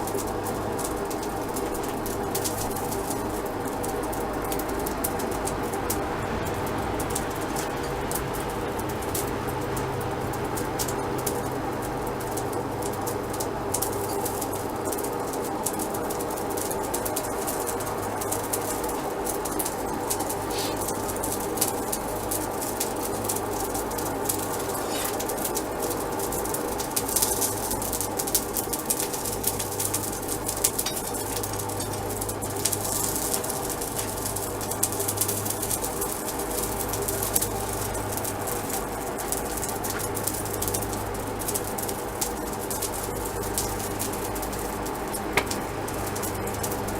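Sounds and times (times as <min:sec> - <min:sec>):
crackling clicks: 0:00.0 - 0:46.9.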